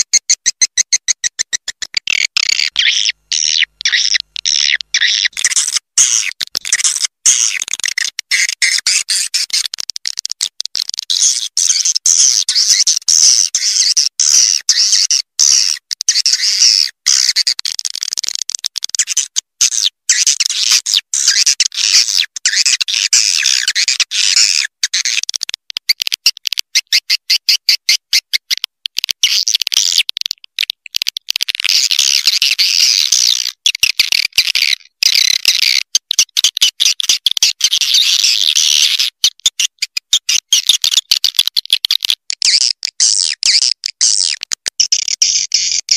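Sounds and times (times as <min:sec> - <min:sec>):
rapid high-pitched bird chirping: 0:00.0 - 0:45.9.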